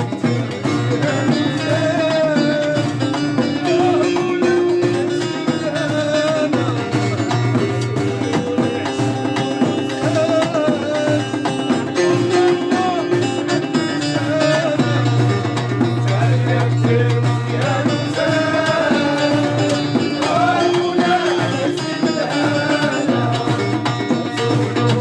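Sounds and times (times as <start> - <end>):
folk drums rhythm: 0.0 - 25.0.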